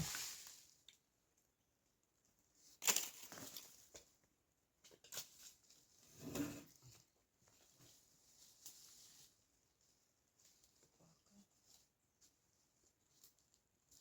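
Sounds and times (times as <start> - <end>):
faint scuffs and rustles: 0.0 - 0.8, 5.2 - 14.0.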